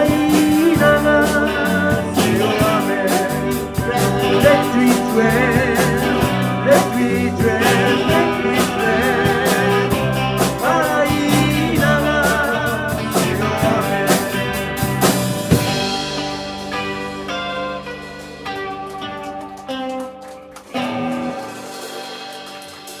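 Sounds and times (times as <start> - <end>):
drum beat: 0.0 - 16.8
rock band playing: 0.0 - 23.0
wavering lead melody: 1.4 - 23.0.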